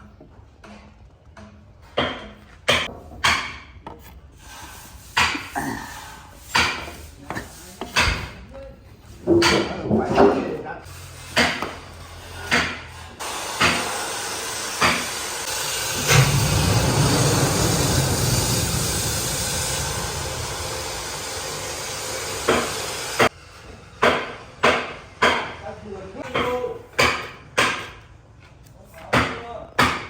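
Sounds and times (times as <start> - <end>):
hissing machine noise: 13.1 - 25.2.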